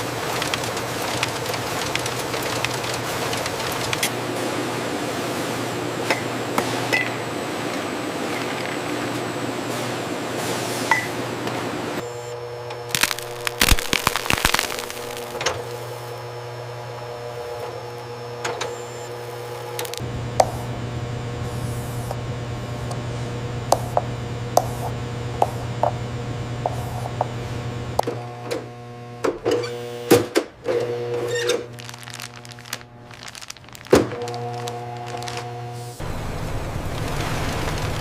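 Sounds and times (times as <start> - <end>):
machinery humming: 11.2 - 38.0.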